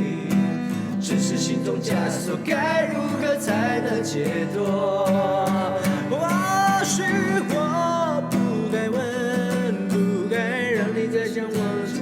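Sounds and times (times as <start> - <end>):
guitar chords: 0.0 - 12.0.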